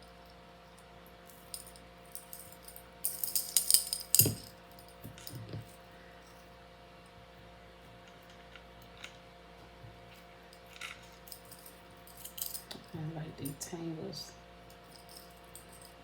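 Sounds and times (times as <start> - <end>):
metal chains jingling: 1.4 - 5.4, 11.1 - 13.6, 14.8 - 16.0.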